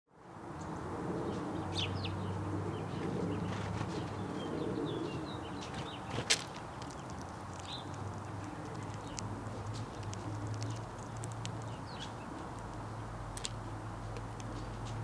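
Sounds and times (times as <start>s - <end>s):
sparrows chirping: 0.7s - 15.0s.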